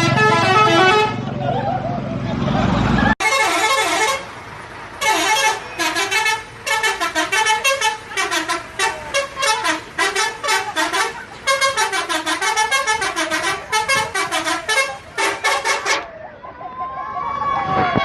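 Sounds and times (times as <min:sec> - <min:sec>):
musical bus air horn melody: 0:00.0 - 0:01.2, 0:03.2 - 0:04.4, 0:05.0 - 0:16.1.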